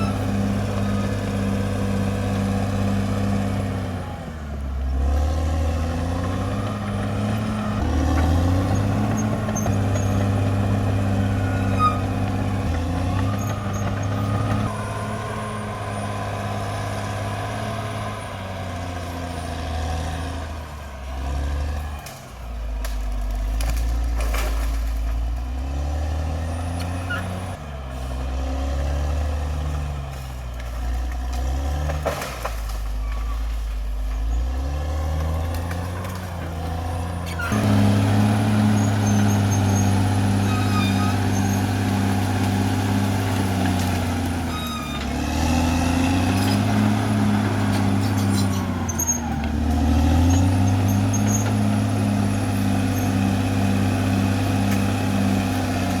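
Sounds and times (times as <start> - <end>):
short high squeaks: 0.0 - 1.1, 11.1 - 12.6, 38.6 - 41.8, 44.4 - 45.3, 50.2 - 51.6
bulldozer diesel engine: 0.0 - 56.0.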